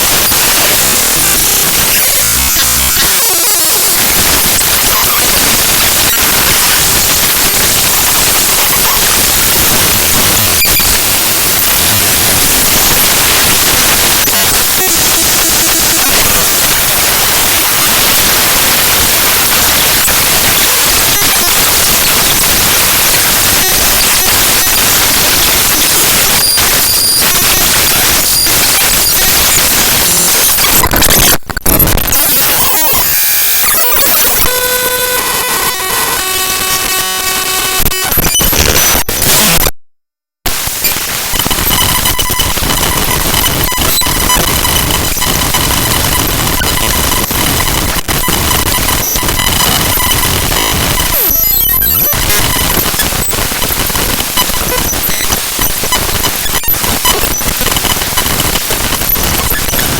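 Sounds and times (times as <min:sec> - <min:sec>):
harsh static: 0:00.0 - 0:39.8, 0:40.5 - 0:59.9.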